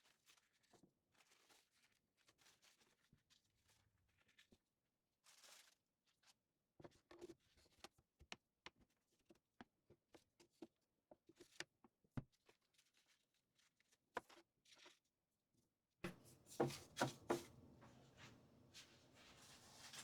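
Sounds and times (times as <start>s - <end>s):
short rustle: 16.1s - 20.0s.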